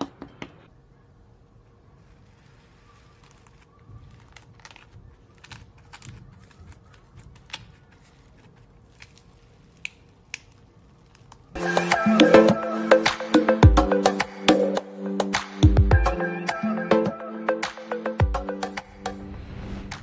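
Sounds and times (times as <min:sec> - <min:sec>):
loud music with sharp percussion: 0:11.6 - 0:16.2, 0:17.0 - 0:19.2.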